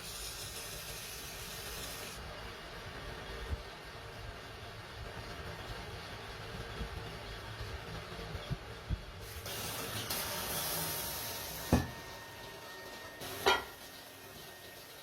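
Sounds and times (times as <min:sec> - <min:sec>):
hissing spray: 0:00.0 - 0:02.2, 0:09.2 - 0:11.9.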